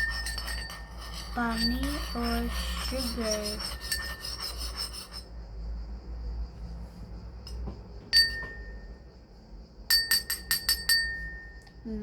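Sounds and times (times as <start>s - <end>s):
spoon clinking against bowl: 0.0s - 4.5s, 7.5s - 8.8s, 9.9s - 11.8s.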